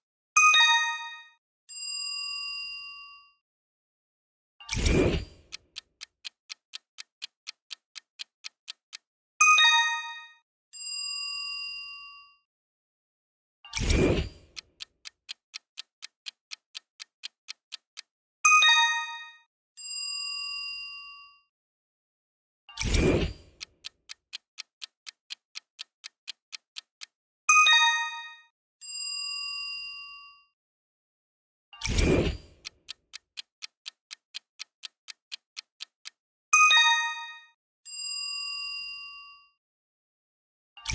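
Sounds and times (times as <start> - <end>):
clock ticking: 4.7 - 10.3, 13.8 - 19.4, 22.8 - 28.4, 32.0 - 37.5
bright chime: 18.6 - 19.4.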